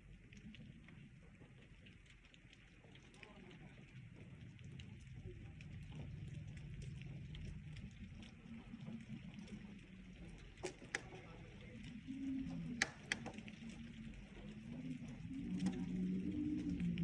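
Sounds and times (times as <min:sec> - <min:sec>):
light rain falling: 0:00.0 - 0:17.0
sharp ticks: 0:12.8 - 0:13.4.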